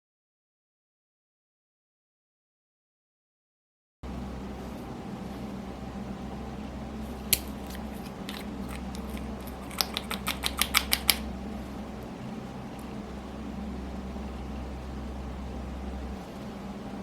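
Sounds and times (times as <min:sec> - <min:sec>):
steady low hum: 0:04.0 - 0:17.0
sharp clicks: 0:07.3 - 0:11.3.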